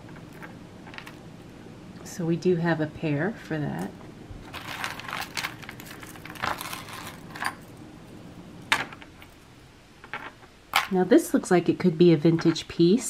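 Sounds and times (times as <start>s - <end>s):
jewelry clicking and clinking: 0.0s - 1.3s, 4.4s - 11.0s.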